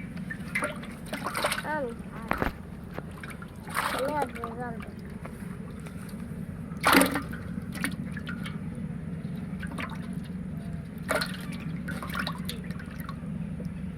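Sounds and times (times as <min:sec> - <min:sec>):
water splashing: 0:00.0 - 0:13.8
steady low hum: 0:00.0 - 0:13.9
water dripping: 0:06.7 - 0:13.8.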